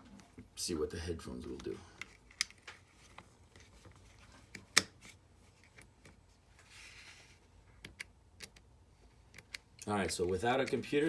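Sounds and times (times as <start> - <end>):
soft rustle: 1.4 - 7.7
small plastic clicks: 7.8 - 8.7, 9.3 - 9.9.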